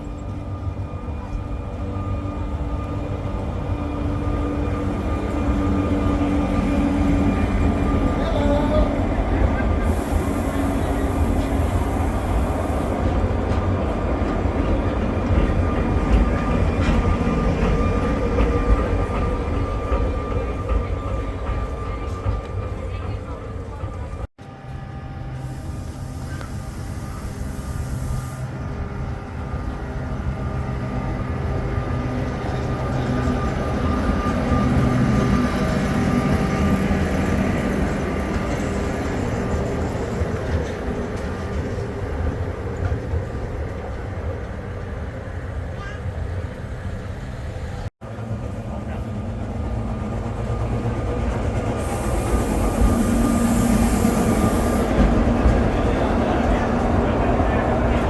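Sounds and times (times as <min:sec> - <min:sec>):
tram mechanical hum: 0:00.0 - 0:58.0
high hiss: 0:25.4 - 0:28.5, 0:51.8 - 0:54.9.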